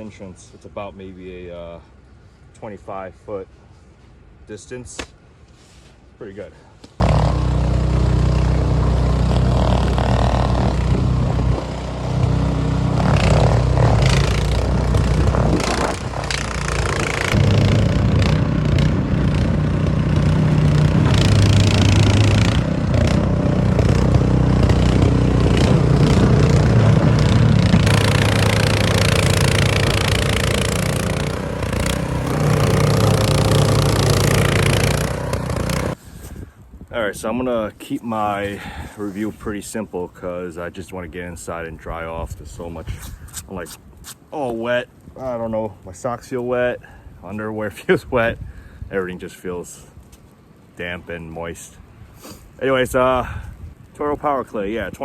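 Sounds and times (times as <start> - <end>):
snow blower engine running: 7.0 - 36.0.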